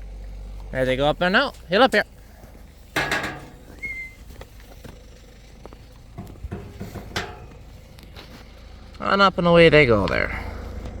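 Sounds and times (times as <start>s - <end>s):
short high whistle: 3.7s - 4.2s
faint knocks: 6.1s - 7.8s.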